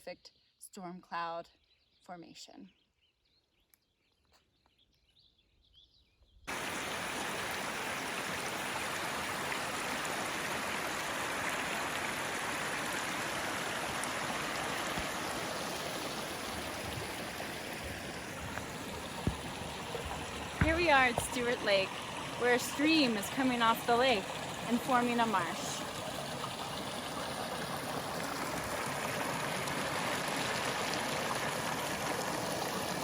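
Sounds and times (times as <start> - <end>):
stream rushing: 6.5 - 33.0.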